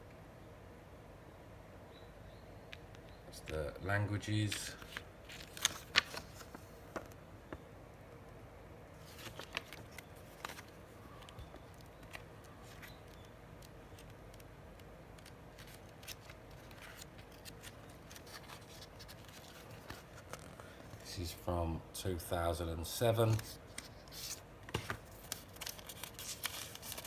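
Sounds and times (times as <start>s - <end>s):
paper rustling: 4.4s - 7.1s, 9.0s - 14.4s, 15.2s - 21.1s, 23.2s - 27.0s.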